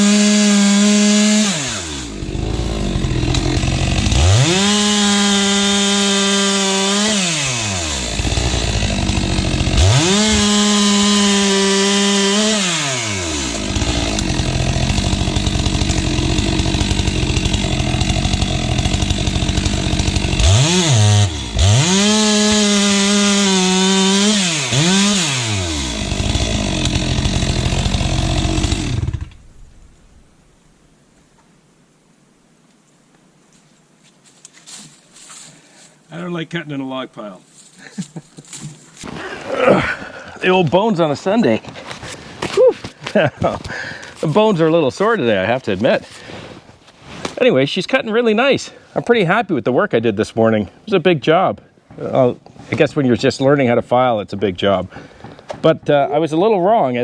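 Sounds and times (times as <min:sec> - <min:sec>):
chainsaw cutting logs: 0:00.0 - 0:29.8, 0:38.4 - 0:44.5.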